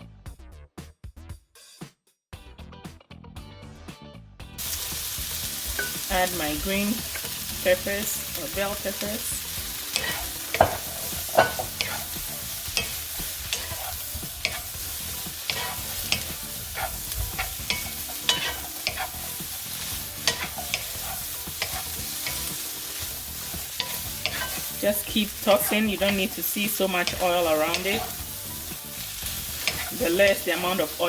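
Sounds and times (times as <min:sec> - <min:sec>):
vegetables sizzling in pan: 0:04.6 - 0:31.0
utensil scraping pan: 0:09.2 - 0:28.3, 0:29.2 - 0:30.9.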